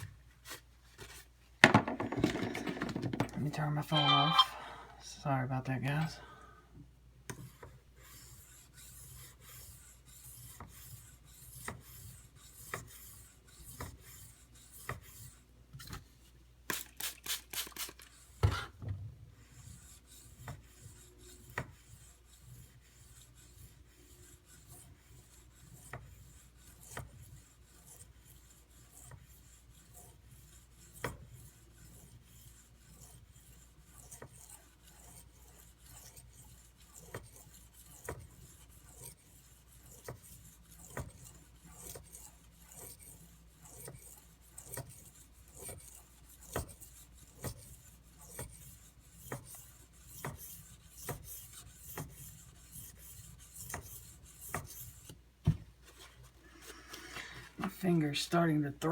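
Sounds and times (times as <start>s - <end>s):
knife scraping on whetstone: 3.8s - 4.7s, 19.5s - 55.2s.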